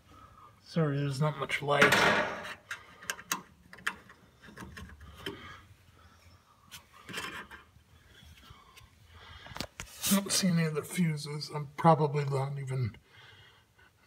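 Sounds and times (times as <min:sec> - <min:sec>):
hands handling parts and wiring: 0:01.8 - 0:05.6, 0:06.7 - 0:10.1.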